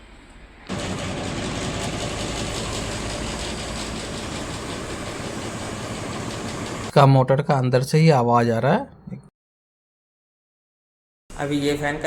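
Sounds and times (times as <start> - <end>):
ceiling fan whirring: 0.0 - 7.0.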